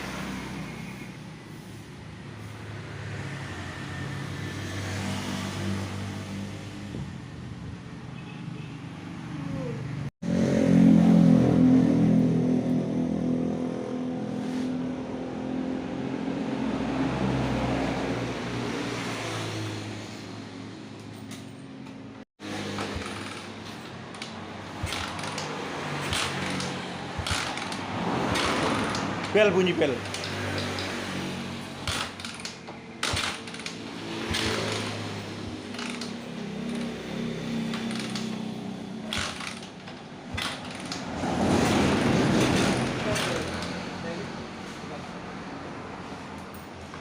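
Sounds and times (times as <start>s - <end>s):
motorcycle engine running: 22.4s - 41.0s
sharp mechanical clicks: 24.2s - 29.3s.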